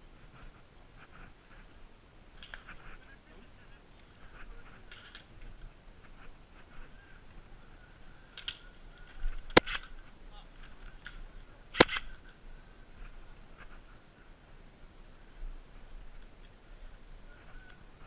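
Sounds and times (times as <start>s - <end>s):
airsoft gun shots: 11.8s - 12.1s.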